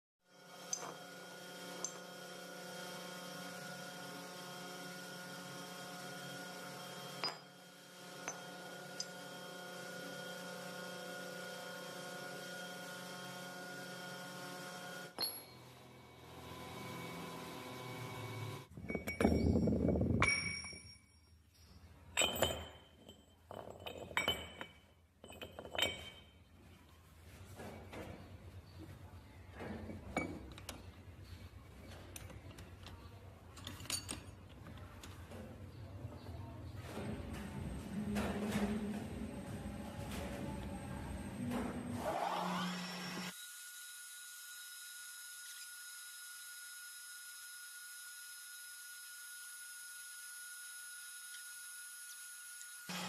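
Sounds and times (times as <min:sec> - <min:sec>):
metal parts clinking: 0:32.0 - 0:35.2
machine humming: 0:36.8 - 0:43.3.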